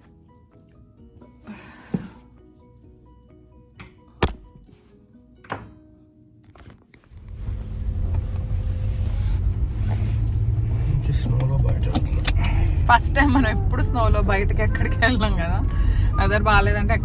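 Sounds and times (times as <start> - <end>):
soft background music: 0.0 - 17.0
car rumbling under way: 7.0 - 17.0.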